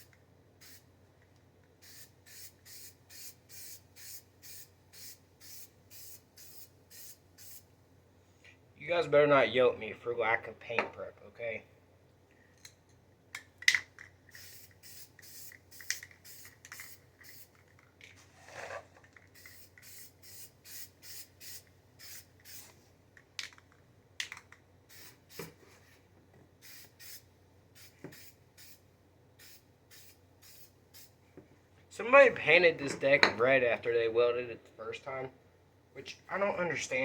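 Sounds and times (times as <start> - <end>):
spray paint hissing: 0.0 - 0.9, 1.8 - 7.7, 14.3 - 17.6, 19.3 - 22.7, 24.9 - 25.6, 26.6 - 28.8, 29.4 - 31.2.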